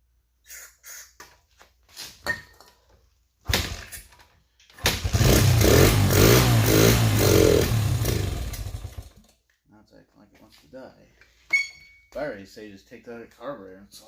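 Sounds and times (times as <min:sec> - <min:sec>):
small motorcycle engine starting: 0:04.8 - 0:09.3.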